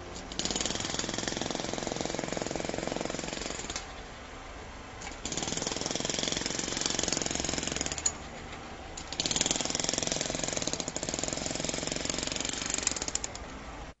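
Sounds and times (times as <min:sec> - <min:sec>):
jackhammer hammering: 0:00.3 - 0:03.8, 0:05.2 - 0:08.2, 0:09.1 - 0:13.4.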